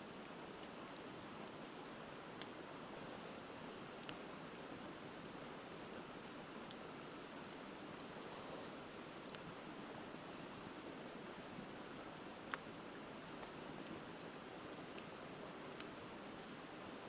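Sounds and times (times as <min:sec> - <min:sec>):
wood fire crackling: 0:00.1 - 0:17.0.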